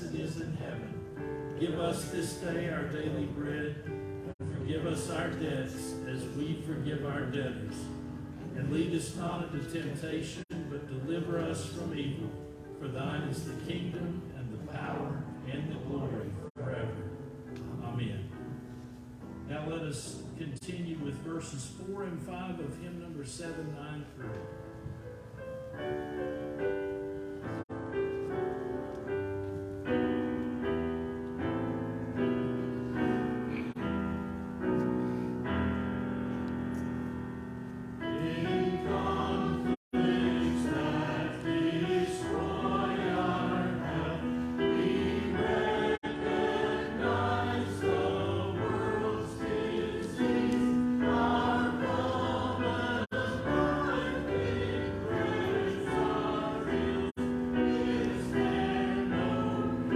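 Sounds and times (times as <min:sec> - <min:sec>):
congregation singing a hymn: 0:00.0 - 0:18.3, 0:37.9 - 0:59.9
piano playing: 0:00.0 - 0:59.9.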